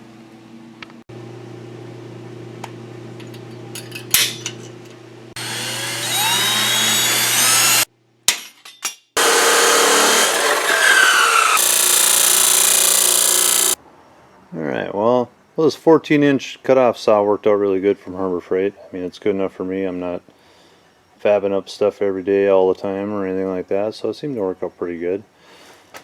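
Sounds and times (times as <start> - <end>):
cutoff saw whine: 5.3 - 7.9, 9.2 - 13.8
saw grinding through steel: 5.4 - 7.9, 9.2 - 13.8.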